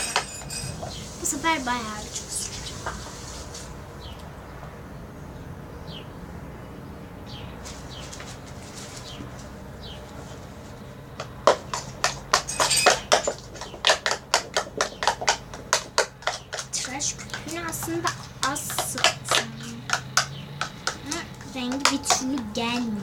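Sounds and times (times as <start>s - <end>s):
loud clicks and clacks: 11.2s - 23.0s.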